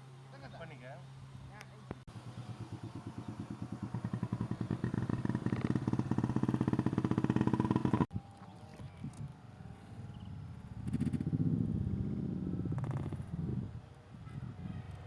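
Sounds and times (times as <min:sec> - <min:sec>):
motorcycle engine running: 0:02.1 - 0:08.1.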